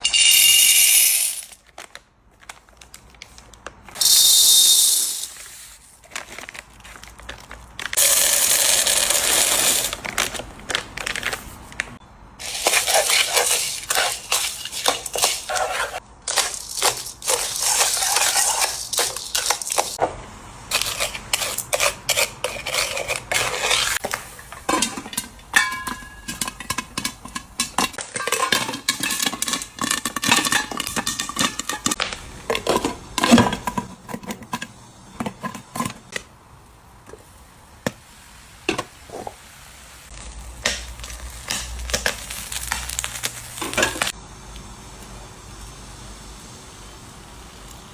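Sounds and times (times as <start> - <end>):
kernels rattling against metal: 0.0 - 1.6, 4.0 - 5.4, 24.0 - 34.7
popcorn popping: 0.0 - 2.0, 3.6 - 5.4, 6.2 - 20.0, 24.0 - 36.3, 40.1 - 44.2.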